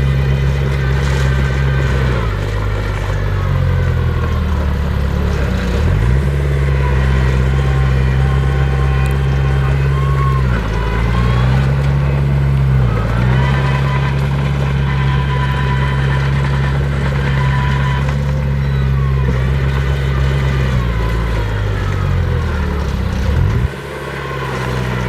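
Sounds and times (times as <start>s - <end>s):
heavy diesel engine running: 0.0s - 25.0s
faint high whines: 17.2s - 25.0s.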